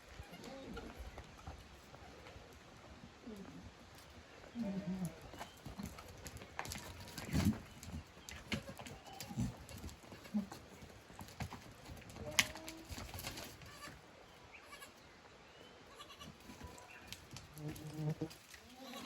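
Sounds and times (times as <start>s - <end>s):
goats bleating faintly: 17.6s - 19.0s.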